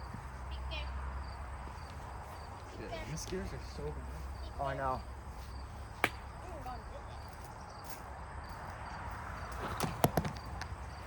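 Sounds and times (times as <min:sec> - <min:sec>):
plastic ball hitting hard surface: 0:09.8 - 0:10.5.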